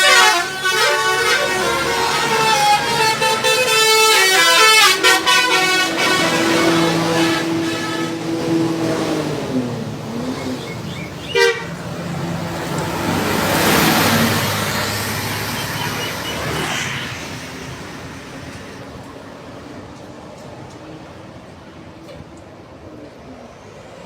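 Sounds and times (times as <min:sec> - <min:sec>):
bus horn toot: 0:00.0 - 0:17.0
buses passing: 0:00.0 - 0:24.0.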